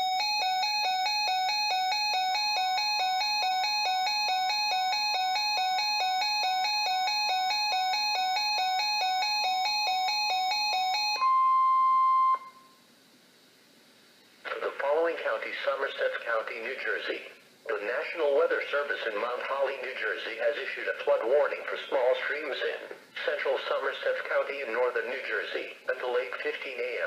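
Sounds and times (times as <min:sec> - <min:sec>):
rapid electronic beeping alarm: 0:00.0 - 0:12.7
steady single alert tone: 0:11.2 - 0:12.8.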